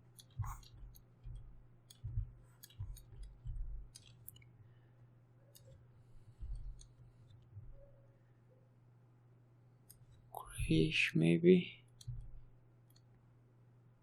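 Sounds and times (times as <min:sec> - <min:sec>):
computer clicks and thuds: 0:00.0 - 0:04.5, 0:05.6 - 0:07.9, 0:11.9 - 0:13.0
low electrical hum: 0:00.0 - 0:14.0.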